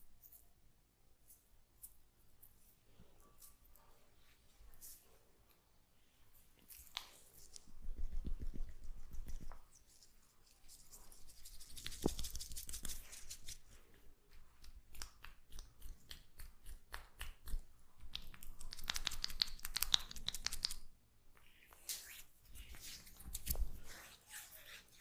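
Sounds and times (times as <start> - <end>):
oily hands rubbing scalp: 6.7 - 17.6.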